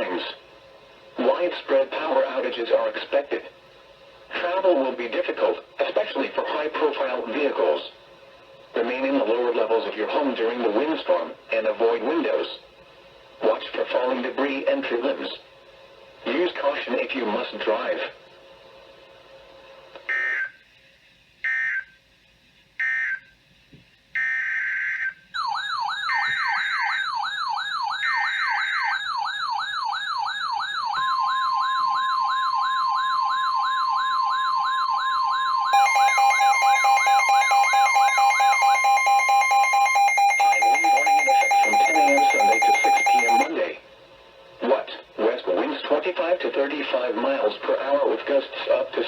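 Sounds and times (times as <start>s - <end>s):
pulsing two-tone alarm: 20.1s - 20.6s, 24.2s - 43.5s
screeching data tone bursts: 35.7s - 43.5s
steady alert tone: 35.7s - 43.5s.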